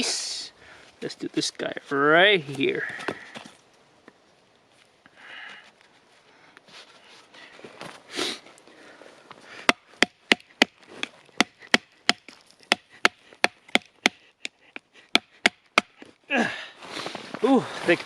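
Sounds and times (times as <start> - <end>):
firewood splitting strikes: 9.6 - 16.2.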